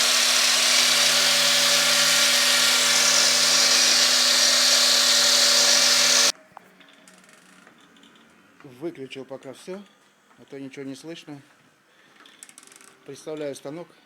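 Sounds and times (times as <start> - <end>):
dust extractor rush: 0.0 - 6.3
grinder whine: 0.0 - 6.3.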